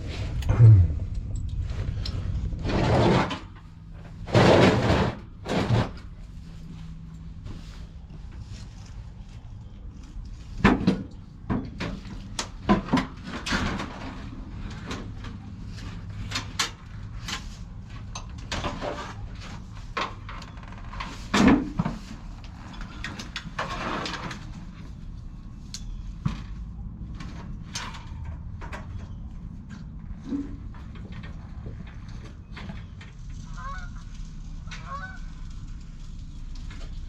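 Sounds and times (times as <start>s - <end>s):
steady low hum: 0.0s - 11.4s
knocks and clatter of tools: 25.8s - 33.7s.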